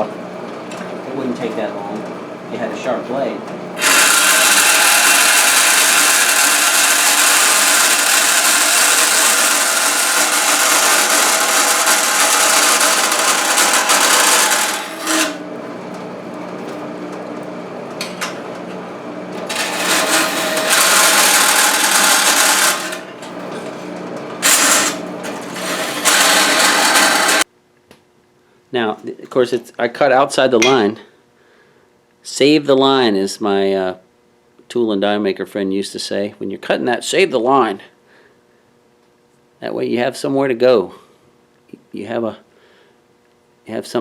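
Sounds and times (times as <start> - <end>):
bandsaw motor humming: 0.0 - 27.5
bandsaw cutting metal hiss: 3.8 - 15.4, 24.4 - 27.4.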